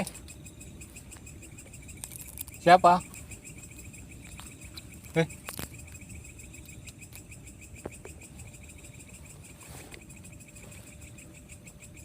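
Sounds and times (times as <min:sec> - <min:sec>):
crickets chirping: 0:00.0 - 0:12.0
soft rustle: 0:09.2 - 0:11.2.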